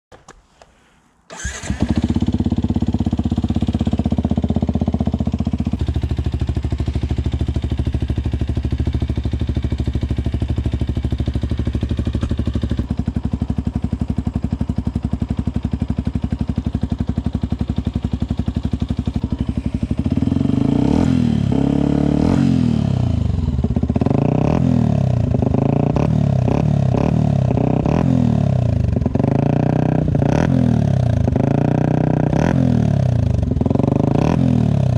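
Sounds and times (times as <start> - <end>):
motorcycle engine idling: 1.3 - 27.7
motorcycle engine revving: 1.3 - 34.9.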